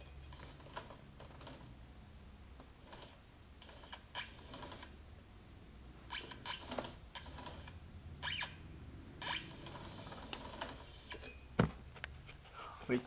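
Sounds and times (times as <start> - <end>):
short squeaks: 2.9 - 4.9, 6.1 - 8.6, 9.2 - 11.6.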